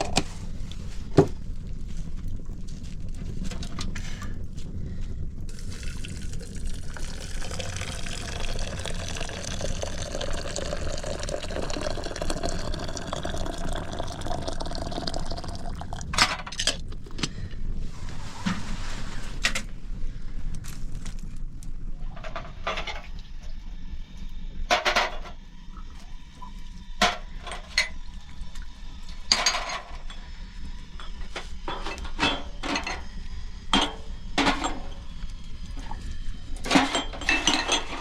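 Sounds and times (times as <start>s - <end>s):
liquid pouring into container: 5.5s - 16.1s.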